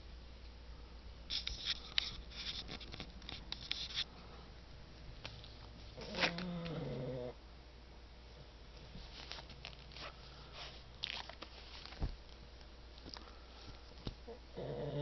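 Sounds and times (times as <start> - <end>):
soft clicking and scratching: 1.3 - 4.1
dog snoring: 6.0 - 7.4, 14.3 - 15.0.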